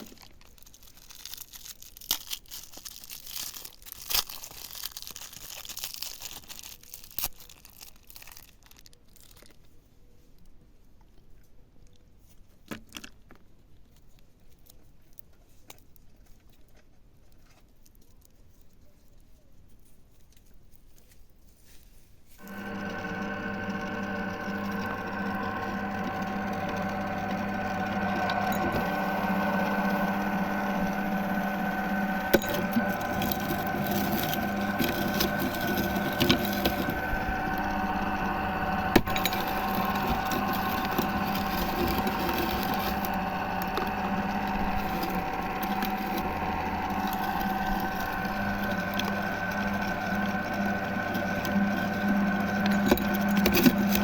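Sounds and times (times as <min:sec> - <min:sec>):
hard candy cracking and crunching: 0:00.0 - 0:09.8, 0:22.4 - 0:54.0
meat grinder humming: 0:22.4 - 0:54.0.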